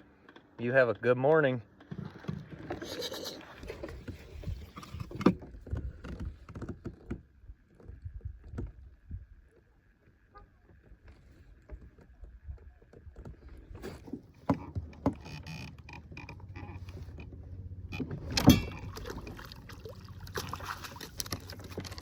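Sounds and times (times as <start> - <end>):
knocks and clatter on boat: 0.3 - 2.9, 3.6 - 19.6, 20.4 - 22.0
low steady hum: 13.6 - 22.0.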